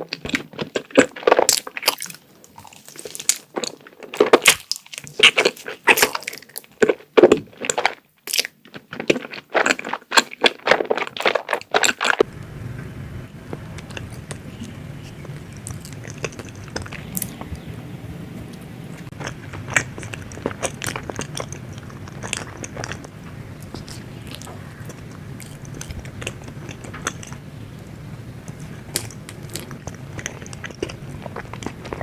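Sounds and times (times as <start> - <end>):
close crinkling and crunching: 0.0 - 12.3, 13.4 - 32.0
steady low hum: 12.2 - 32.0.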